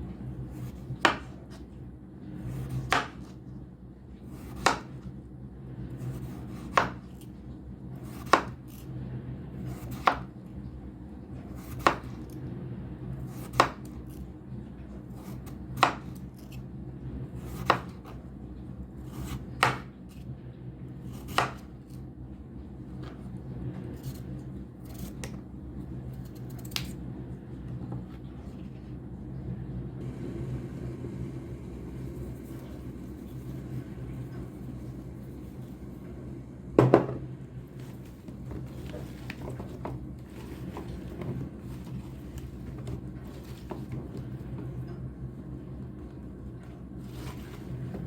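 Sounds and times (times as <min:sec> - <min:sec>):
steady low hum: 0:00.0 - 0:48.0
knife chopping on cutting board: 0:00.6 - 0:01.4, 0:02.5 - 0:03.3, 0:04.4 - 0:04.9, 0:06.1 - 0:07.0, 0:08.0 - 0:08.8, 0:09.7 - 0:10.3, 0:11.6 - 0:12.2, 0:13.3 - 0:14.0, 0:15.2 - 0:16.2, 0:17.5 - 0:18.1, 0:19.1 - 0:19.9, 0:21.1 - 0:21.7.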